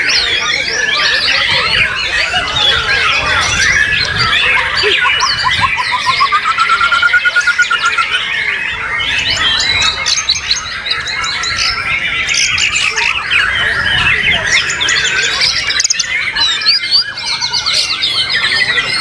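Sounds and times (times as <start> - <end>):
rapid rising bird trill: 0.0 - 13.9
birds singing: 0.0 - 19.0.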